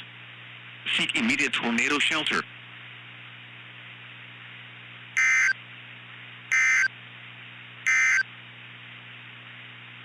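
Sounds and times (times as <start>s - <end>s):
low hum and hiss: 0.0s - 10.0s
shrill digital data tones: 5.2s - 5.6s, 6.5s - 6.9s, 7.9s - 8.2s.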